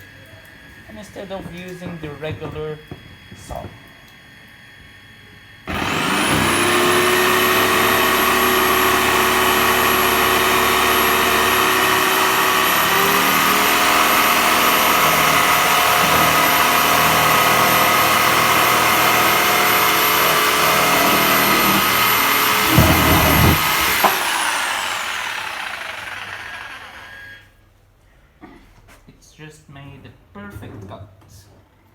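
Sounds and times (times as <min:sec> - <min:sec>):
jigsaw sawing wood: 0:05.7 - 0:27.5
knocks: 0:22.4 - 0:24.3.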